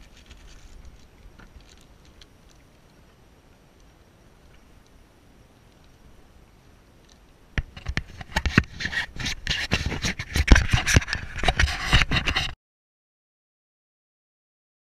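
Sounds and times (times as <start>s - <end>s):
knocks and scraping: 0.0s - 2.2s, 7.6s - 12.6s.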